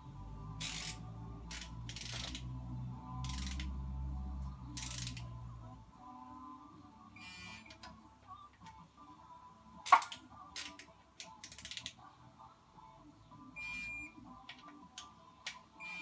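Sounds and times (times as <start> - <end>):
ratchet wrench clicking: 0.6 - 2.5, 3.2 - 3.9, 4.8 - 5.4, 9.9 - 12.0.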